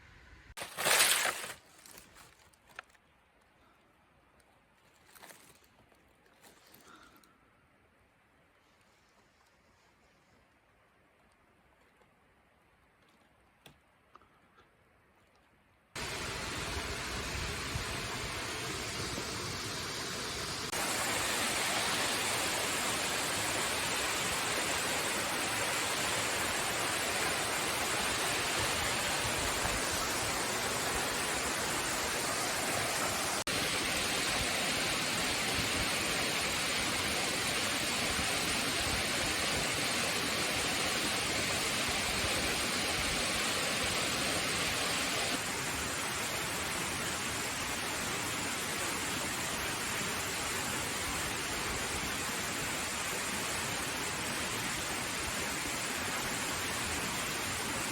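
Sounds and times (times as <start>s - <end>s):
waterfall rushing: 16.0s - 47.6s.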